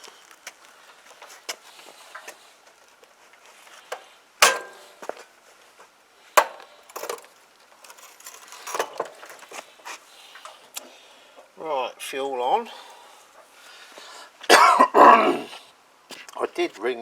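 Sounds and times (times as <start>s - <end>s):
clunks and clatter of handling: 6.4s - 9.7s.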